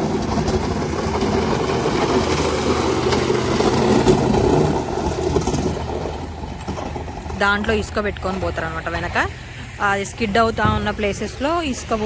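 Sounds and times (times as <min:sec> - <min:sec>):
vehicle engine passing: 0:00.0 - 0:12.0.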